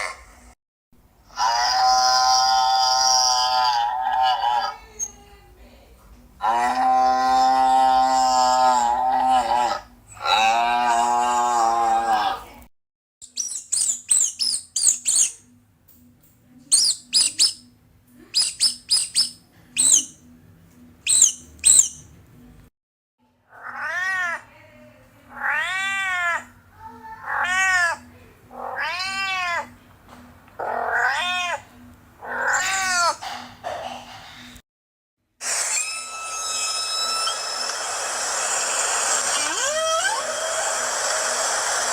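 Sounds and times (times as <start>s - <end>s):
high-pitched bird chirps: 13.2s - 15.6s, 16.7s - 20.3s, 21.0s - 22.1s, 35.8s - 40.8s
cat meowing: 23.5s - 24.5s, 25.3s - 29.8s, 30.6s - 33.3s, 38.2s - 41.6s.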